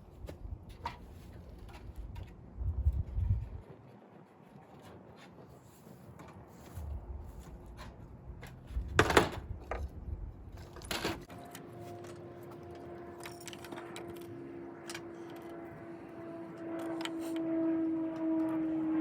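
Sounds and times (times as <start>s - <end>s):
low engine drone: 9.6s - 19.0s.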